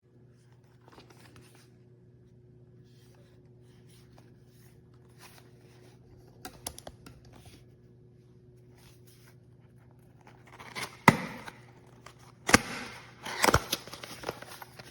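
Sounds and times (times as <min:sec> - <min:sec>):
steady low hum: 0:00.0 - 0:14.9
handling scratches and clicks: 0:08.8 - 0:14.9.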